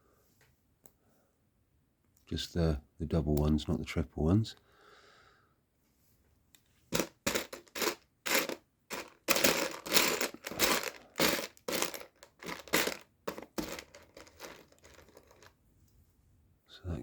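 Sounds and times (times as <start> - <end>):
plastic pieces rattling in tray: 6.9 - 15.5.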